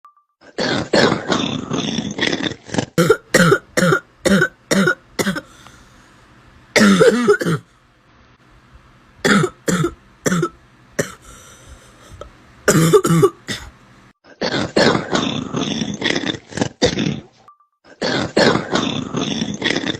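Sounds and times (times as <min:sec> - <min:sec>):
person coughing hard: 0:03.0 - 0:05.5, 0:06.8 - 0:07.7, 0:09.2 - 0:11.2, 0:12.7 - 0:13.7, 0:17.9 - 0:18.9.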